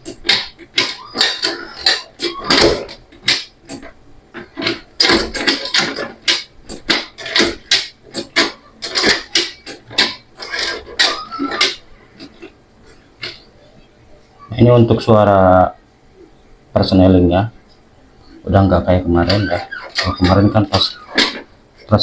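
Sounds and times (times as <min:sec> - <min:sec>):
gearshift clunks and rattles: 0:00.0 - 0:12.5, 0:19.2 - 0:22.0.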